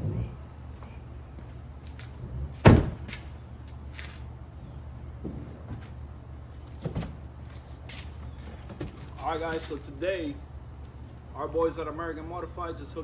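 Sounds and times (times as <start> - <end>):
steady low hum: 0.0 - 13.0
loud thump: 2.6 - 3.1.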